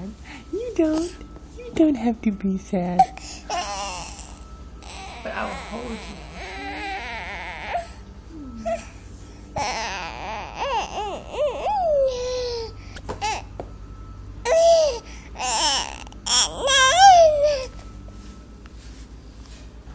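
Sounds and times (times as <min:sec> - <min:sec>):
infant babbling and squealing: 0:03.5 - 0:08.0, 0:09.6 - 0:13.4, 0:14.5 - 0:17.7.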